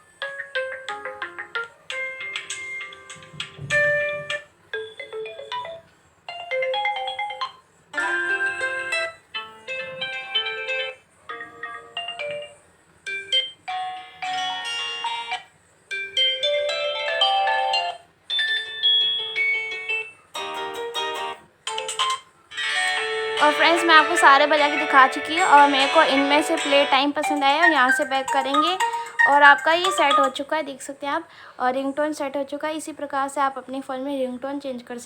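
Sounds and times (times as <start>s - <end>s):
short melodic ringtone snippets: 22.7s - 30.5s.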